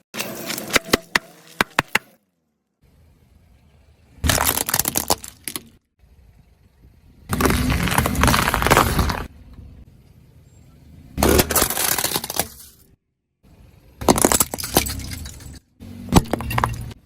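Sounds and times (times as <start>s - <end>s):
objects cracking under tyre: 4.2s - 5.9s, 7.3s - 9.4s, 11.2s - 13.0s, 14.0s - 17.0s.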